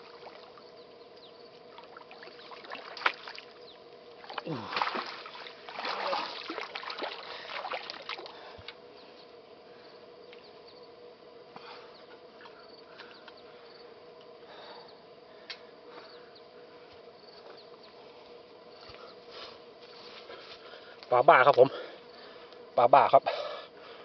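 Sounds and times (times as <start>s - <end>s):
insect drone: 0.0s - 24.0s
water splashing: 1.7s - 3.6s, 4.2s - 8.4s.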